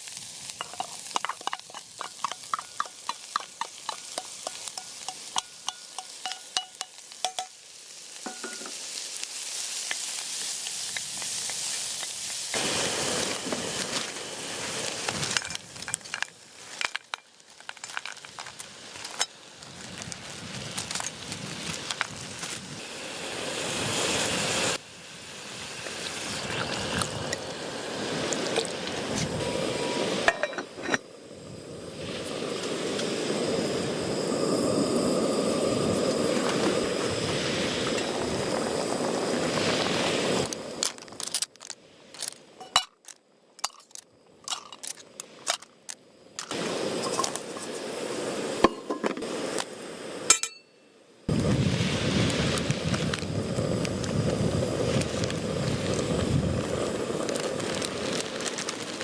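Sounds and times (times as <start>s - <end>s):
camp cookware clinking: 0.5s - 8.8s, 30.2s - 31.0s, 41.2s - 47.6s, 48.6s - 49.2s, 50.3s - 50.9s
steady rushing noise: 19.9s - 40.9s.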